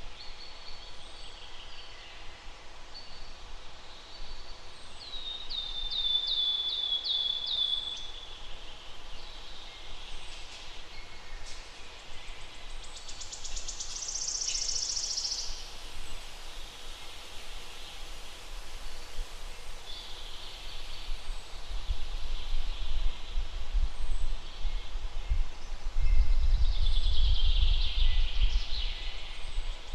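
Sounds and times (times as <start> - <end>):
songbirds singing: 4.0 - 18.2.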